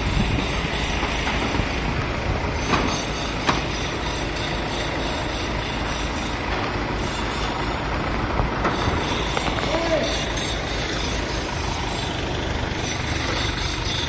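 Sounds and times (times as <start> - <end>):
construction machinery rumbling: 0.0 - 14.0
sharp knocks: 2.6 - 3.9.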